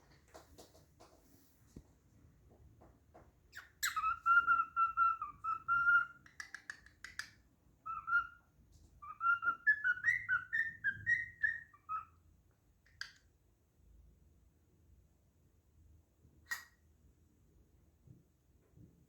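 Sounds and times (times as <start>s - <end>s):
cockatiel whistling: 3.6s - 12.2s
cockatiel clicks: 6.2s - 7.4s, 12.9s - 13.3s.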